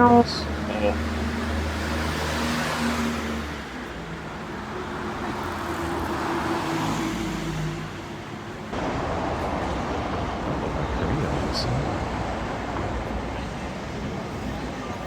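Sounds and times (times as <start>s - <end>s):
steady traffic noise: 0.0s - 15.0s
heavy engine rumble: 8.5s - 15.0s.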